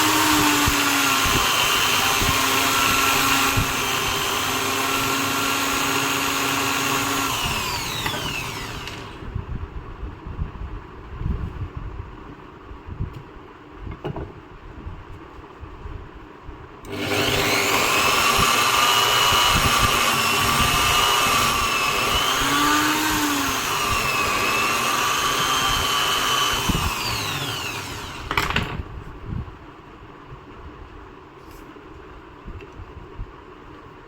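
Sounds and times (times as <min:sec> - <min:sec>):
electric drill whining: 0:00.0 - 0:09.3, 0:16.9 - 0:28.8.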